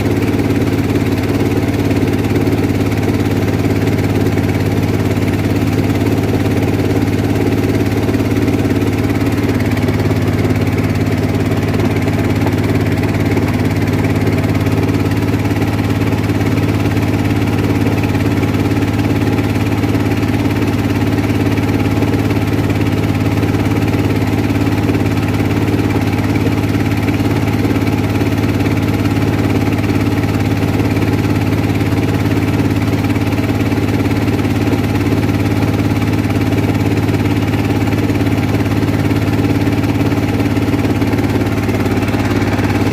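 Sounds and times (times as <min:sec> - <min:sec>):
small boat engine droning: 0:00.0 - 0:42.9.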